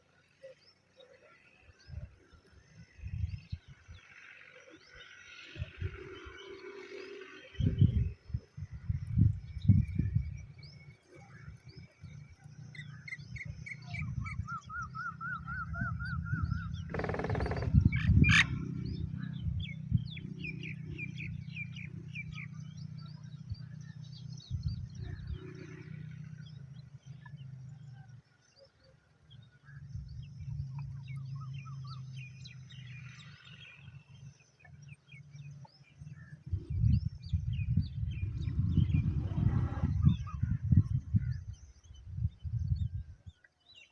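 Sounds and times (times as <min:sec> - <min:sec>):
birds chirping: 0:00.0 - 0:43.9
trilled bird call: 0:16.8 - 0:18.6
low rumble: 0:36.1 - 0:43.1.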